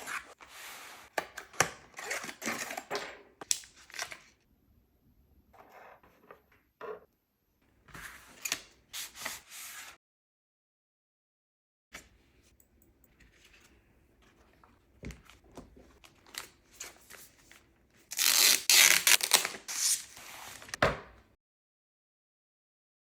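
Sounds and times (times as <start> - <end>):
packaging tearing: 18.1 - 20.0.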